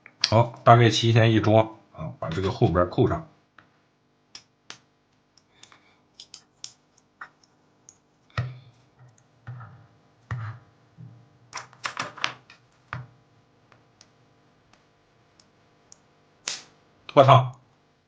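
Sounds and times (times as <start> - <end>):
plastic parts clicking and knocking: 11.6 - 13.1.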